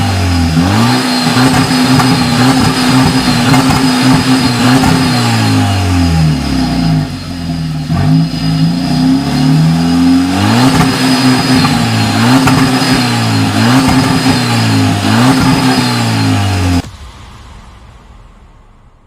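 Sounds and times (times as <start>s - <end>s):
car engine revving: 0.0s - 18.8s.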